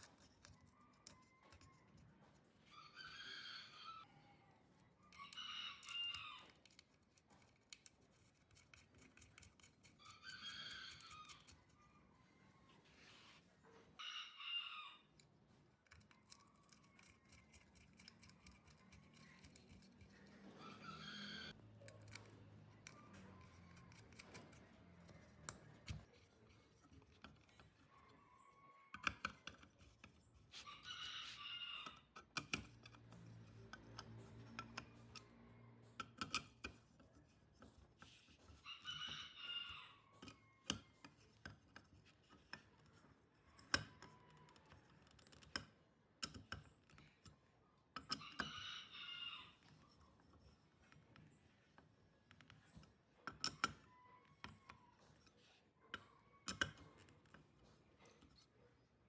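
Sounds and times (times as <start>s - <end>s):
rooster crowing: 2.7s - 6.5s, 14.0s - 15.1s, 20.6s - 21.6s, 30.7s - 32.1s, 38.6s - 40.8s, 48.2s - 49.6s
clicks and taps of small parts: 15.2s - 20.4s, 28.9s - 30.6s, 31.8s - 35.3s, 35.9s - 38.6s, 40.2s - 48.5s, 49.6s - 58.4s.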